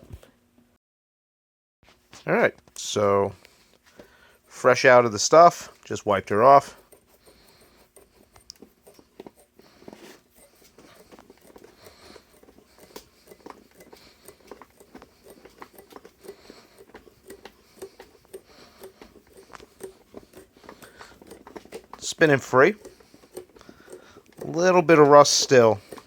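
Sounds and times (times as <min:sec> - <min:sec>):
vise screw spinning: 0:04.3 - 0:26.0
small clicks of vise being handled: 0:06.7 - 0:26.0.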